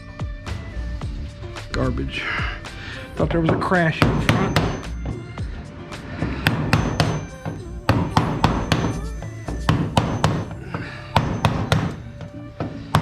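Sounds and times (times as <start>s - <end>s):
hammer striking chisel on metal: 3.4s - 5.3s, 6.3s - 13.0s.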